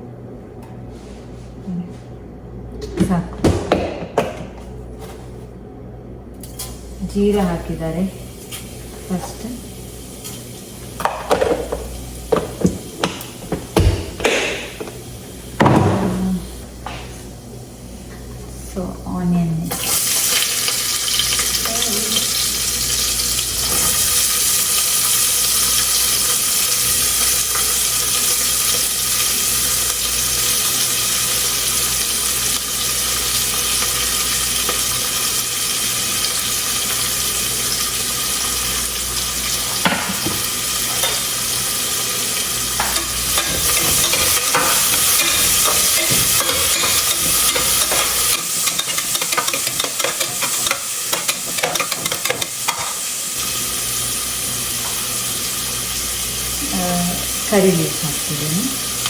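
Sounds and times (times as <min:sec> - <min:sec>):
onion sizzling in a pan: 0:06.5 - 0:13.4, 0:19.6 - 0:59.0.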